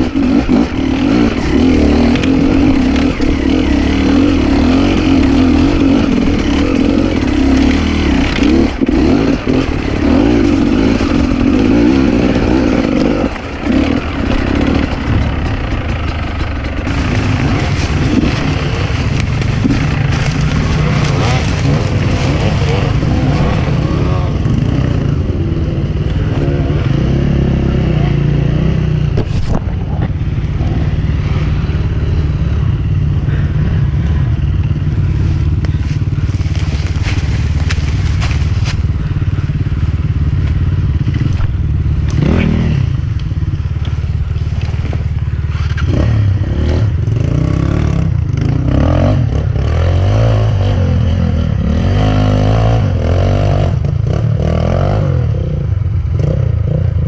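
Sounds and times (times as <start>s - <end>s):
dirt bike engine revving: 0.0s - 57.0s
knocks and clatter: 0.6s - 23.7s.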